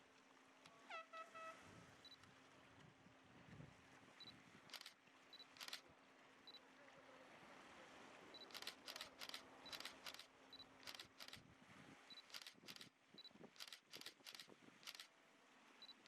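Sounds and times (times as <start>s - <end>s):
camera shutter clicks: 4.7s - 5.0s, 5.6s - 5.8s, 8.5s - 11.4s, 12.2s - 12.9s, 13.6s - 15.1s.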